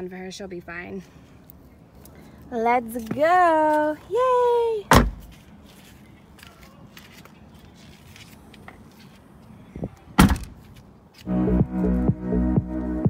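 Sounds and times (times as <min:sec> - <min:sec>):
car door slamming: 0:04.9 - 0:05.3, 0:10.1 - 0:10.6
thud: 0:04.9 - 0:05.3, 0:10.2 - 0:10.6
electronic music with beat: 0:11.3 - 0:13.0.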